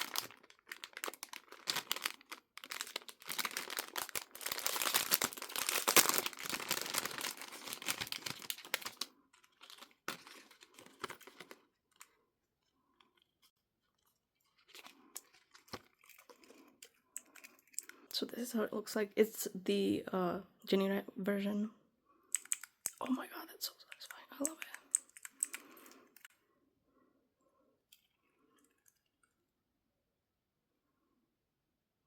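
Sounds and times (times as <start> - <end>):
packaging tearing and crinkling: 0.0 - 11.6.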